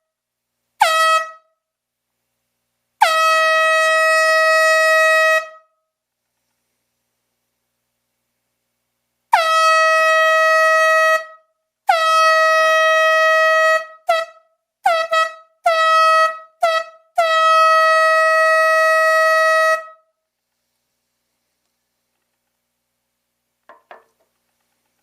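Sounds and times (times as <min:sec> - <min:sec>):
air horn blasts: 0:00.8 - 0:01.5, 0:03.0 - 0:05.7, 0:09.3 - 0:20.0.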